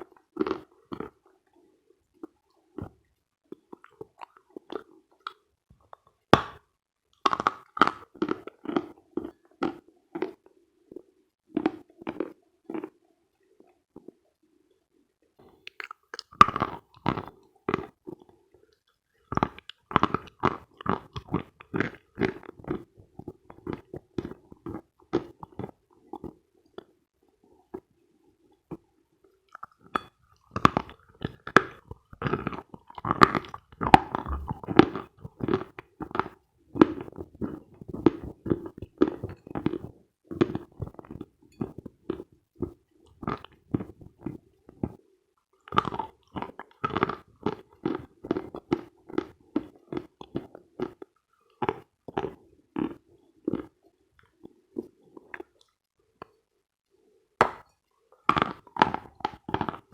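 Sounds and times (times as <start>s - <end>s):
chalk crunching while chewing: 57.4s - 59.9s.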